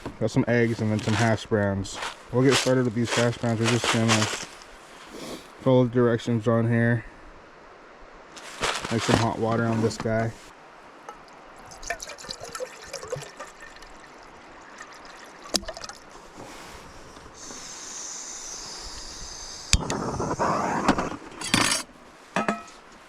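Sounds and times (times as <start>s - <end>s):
hot water pouring into carton: 11.6s - 16.2s.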